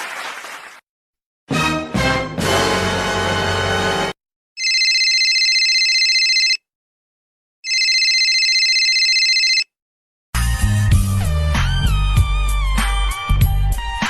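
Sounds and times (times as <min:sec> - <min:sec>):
music: 0:01.5 - 0:04.2, 0:10.4 - 0:14.0
telephone ringing: 0:04.6 - 0:06.7, 0:07.6 - 0:09.7.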